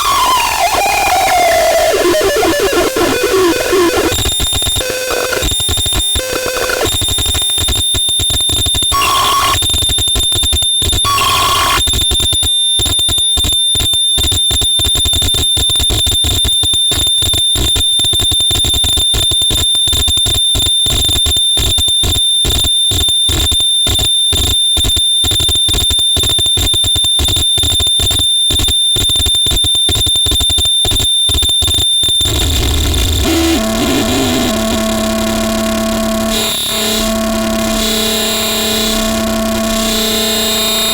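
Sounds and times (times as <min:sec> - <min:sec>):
harsh electronic noise music: 0:00.0 - 0:04.3, 0:32.2 - 0:40.9
high-pitched whine: 0:00.0 - 0:05.4, 0:32.1 - 0:40.9.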